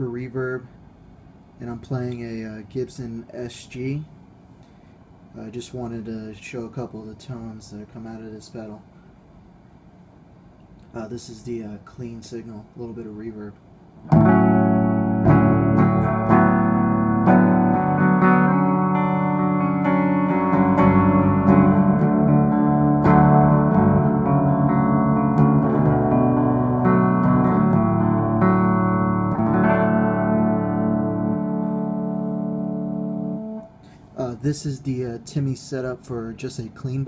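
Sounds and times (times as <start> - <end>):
clean electric guitar: 14.0 - 34.4.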